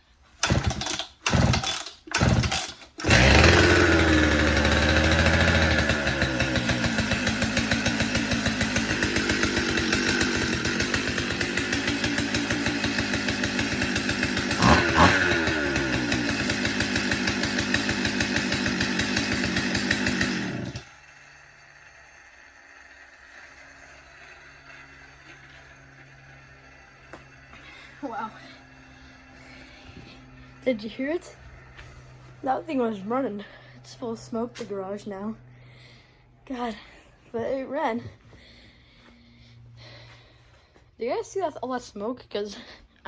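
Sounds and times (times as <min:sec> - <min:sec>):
pull-start tugs: 0:00.1 - 0:37.0
chainsaw engine running: 0:00.3 - 0:41.3.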